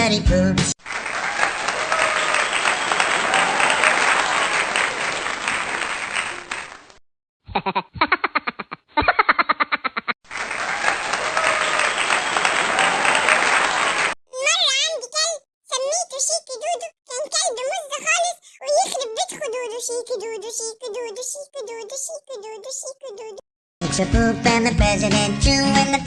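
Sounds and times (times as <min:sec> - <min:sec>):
crowd applause: 0:00.8 - 0:07.0, 0:10.3 - 0:14.2.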